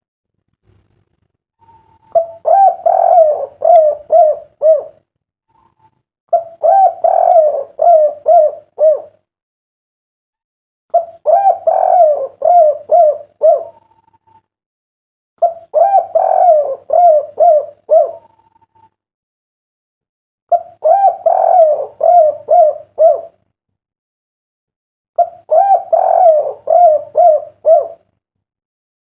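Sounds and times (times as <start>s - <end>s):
dove cooing: 1.6s - 9.2s, 10.9s - 14.1s, 15.4s - 18.9s, 20.5s - 23.4s, 25.2s - 28.1s.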